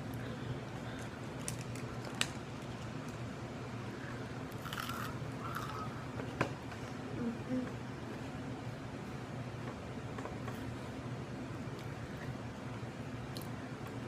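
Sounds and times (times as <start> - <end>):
low background hum: 0.0 - 14.0
chewing crunchy snacks: 4.5 - 5.9.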